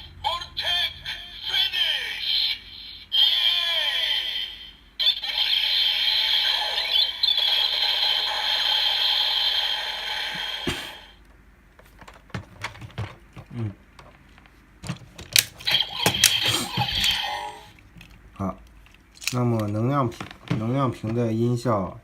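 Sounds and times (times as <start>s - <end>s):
electronic toy sound effect: 0.6s - 10.6s, 15.6s - 17.7s
plastic toy clicks: 15.3s - 17.2s, 19.2s - 19.8s.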